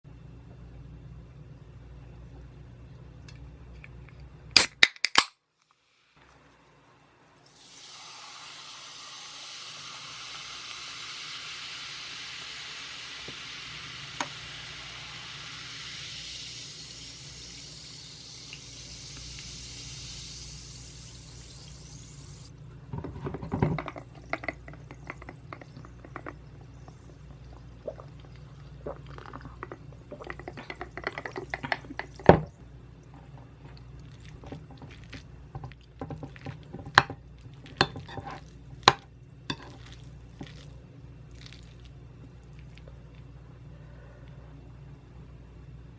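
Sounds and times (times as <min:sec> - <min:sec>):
soda fizzing as poured: 0:07.4 - 0:22.5, 0:23.8 - 0:32.6.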